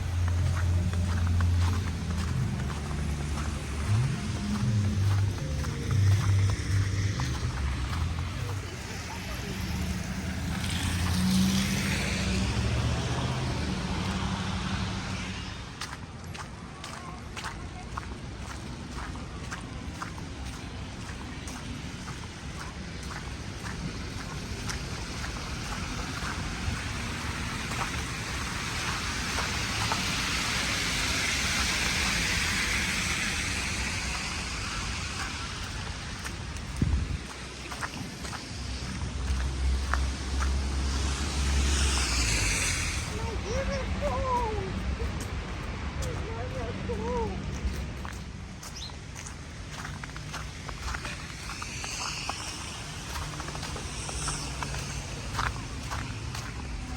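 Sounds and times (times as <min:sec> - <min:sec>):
low rumble: 0:00.0 - 0:16.7, 0:31.4 - 0:46.0
vehicle engine passing: 0:00.0 - 0:17.2, 0:17.9 - 0:56.9
road noise: 0:00.0 - 0:56.9
outdoor hiss: 0:26.8 - 0:36.7, 0:49.4 - 0:56.9.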